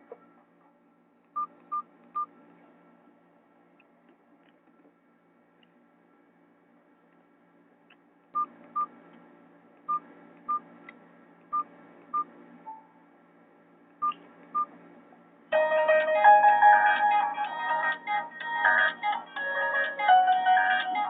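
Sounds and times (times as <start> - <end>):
phone ringtone: 15.6 - 18.0.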